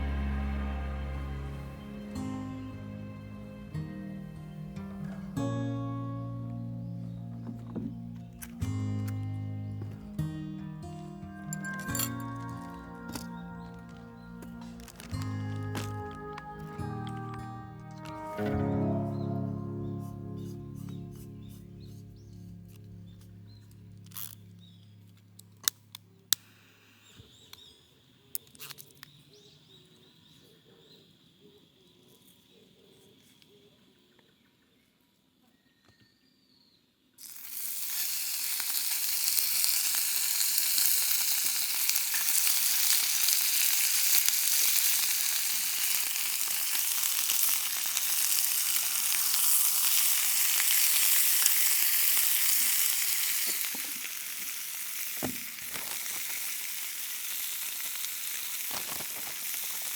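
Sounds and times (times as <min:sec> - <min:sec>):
food frying in a pan: 0:37.2 - 0:59.9.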